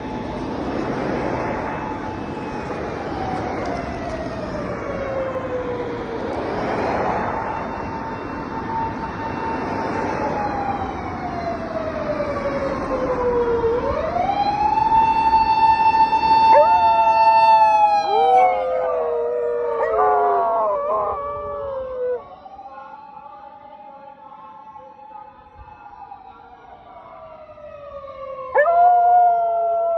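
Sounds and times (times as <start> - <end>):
police siren wailing: 0.0 - 29.9
dogs howling: 16.5 - 22.2, 28.5 - 29.9.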